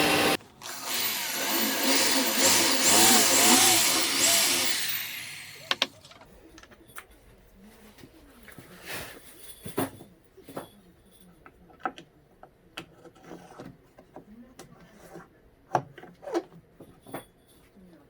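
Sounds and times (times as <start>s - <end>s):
wood and tools knocking: 5.6s - 6.3s.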